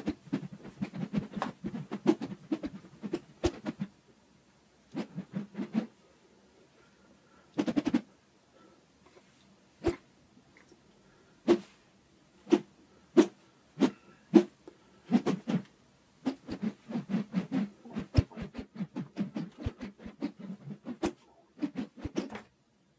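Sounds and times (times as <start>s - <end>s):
plastic rod whipping: 0.0s - 3.9s, 4.9s - 5.9s, 7.6s - 8.0s, 9.8s - 10.0s, 12.5s - 14.5s, 15.1s - 22.5s.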